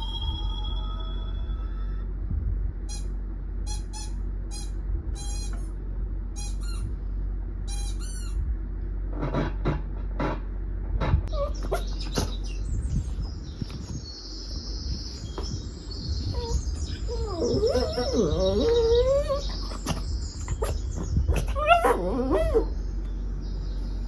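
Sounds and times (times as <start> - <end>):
wavering whine-like call: 0.0 - 2.0
bird-like chirping: 11.3 - 24.0.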